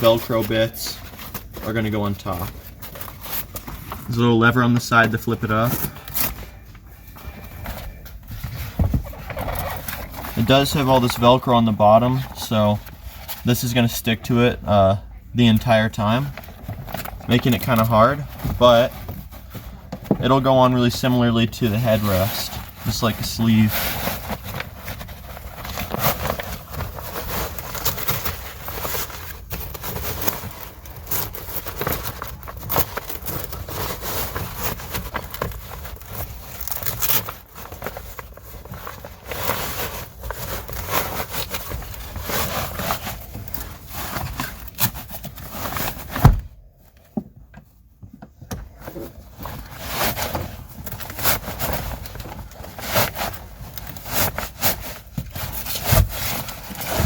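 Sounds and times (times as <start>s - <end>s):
fabric rustling and scraping: 16.0s - 48.0s, 48.6s - 57.0s
velcro crackling: 21.7s - 46.6s.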